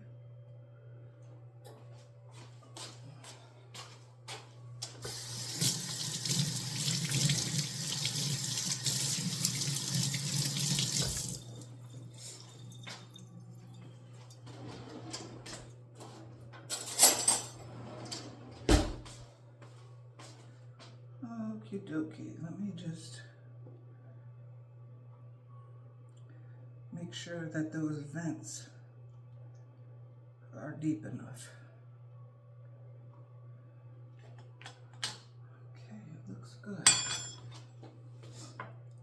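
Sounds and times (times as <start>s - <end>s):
tap running into sink: 5.0s - 11.7s.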